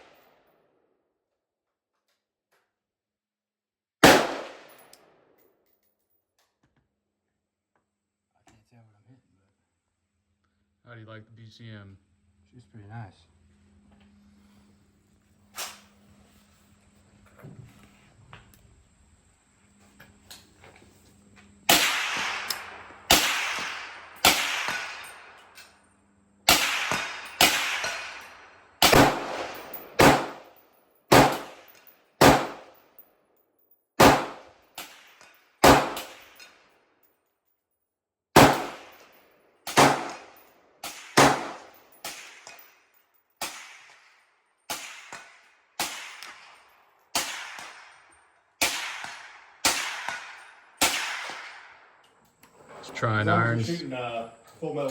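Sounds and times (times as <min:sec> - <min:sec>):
rifle shots with echo: 0:04.0 - 0:04.8, 0:21.7 - 0:25.6, 0:26.5 - 0:32.8, 0:34.0 - 0:36.4, 0:38.4 - 0:39.1, 0:39.7 - 0:42.6, 0:43.4 - 0:52.0.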